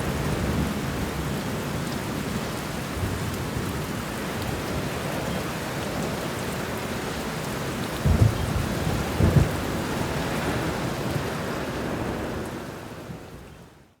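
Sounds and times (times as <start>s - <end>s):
heavy rain: 0.0s - 13.7s
thunder rumbling: 8.0s - 10.0s.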